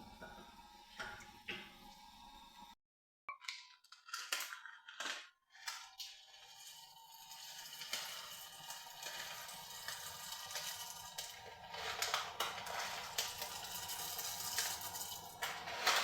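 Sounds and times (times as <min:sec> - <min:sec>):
kitchen cracks and clatters: 0:03.3 - 0:16.0
cooking hiss: 0:06.1 - 0:16.0.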